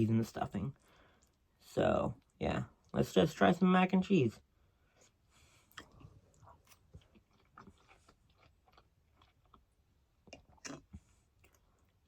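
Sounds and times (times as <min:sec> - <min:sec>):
wet chewing and mouth smacks: 0:05.0 - 0:12.0.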